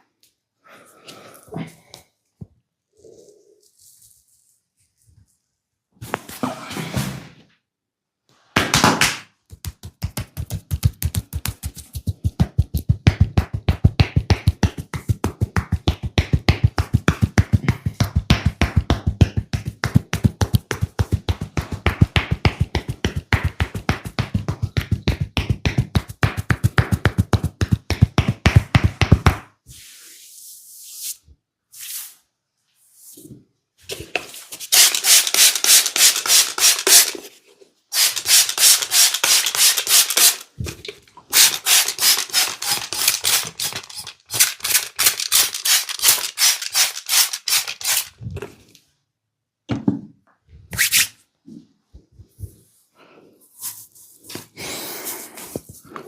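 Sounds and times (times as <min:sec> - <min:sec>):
rhythmic hand tapping: 0:09.4 - 0:29.4.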